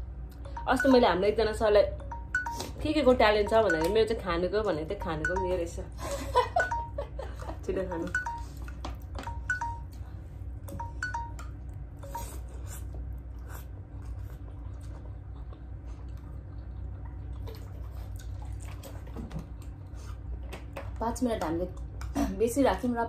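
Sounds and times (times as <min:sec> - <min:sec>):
steady low hum: 0:00.0 - 0:23.0
chewing mouth sounds: 0:11.6 - 0:21.0.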